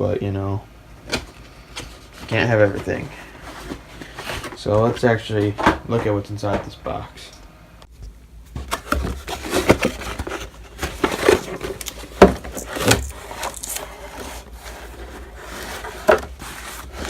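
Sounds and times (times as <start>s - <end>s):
cardboard and paper rustling: 1.2s - 5.7s, 8.5s - 17.0s.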